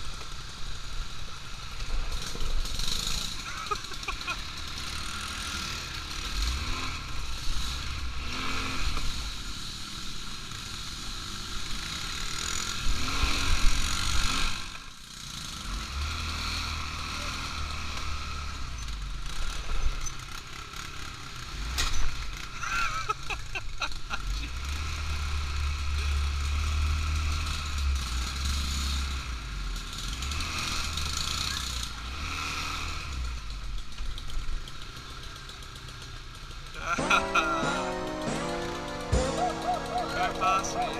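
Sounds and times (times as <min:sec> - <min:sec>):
atv engine running: 0:00.0 - 0:40.9.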